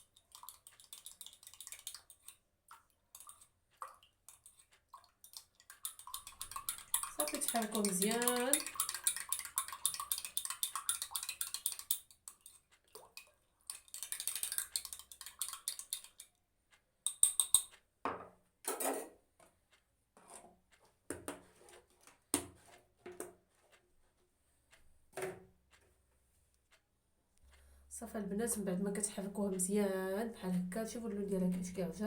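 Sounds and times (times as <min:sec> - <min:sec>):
spoon clinking against container: 0:05.8 - 0:12.6, 0:13.7 - 0:16.3, 0:17.1 - 0:17.7.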